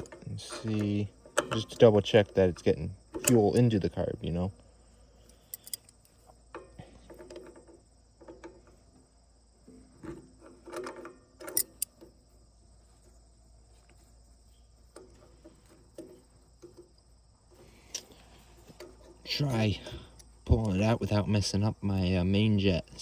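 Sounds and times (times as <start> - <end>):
metal clank: 0.0 - 3.9
hand tools clicking and rattling: 0.0 - 4.1, 5.2 - 8.9, 10.0 - 12.2.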